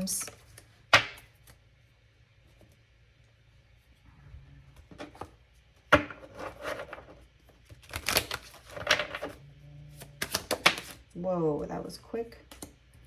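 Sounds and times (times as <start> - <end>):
cards being shuffled: 6.0 - 9.4, 10.0 - 11.0.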